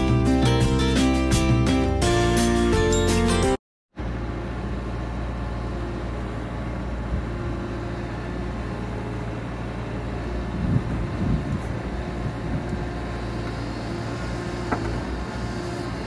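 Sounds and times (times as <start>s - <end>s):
diesel engine running: 4.0s - 16.0s.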